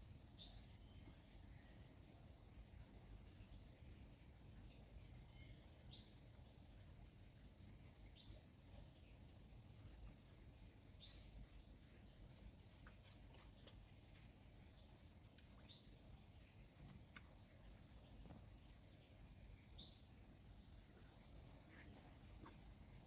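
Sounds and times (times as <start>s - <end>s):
small birds chirping: 0.0s - 23.0s
faint clicks: 15.2s - 15.6s.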